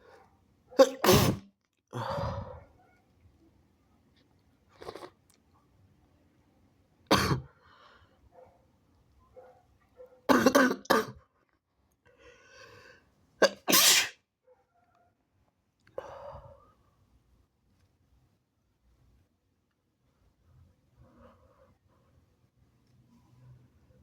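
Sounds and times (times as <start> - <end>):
person sneezing: 0.8 - 1.4, 13.4 - 14.2.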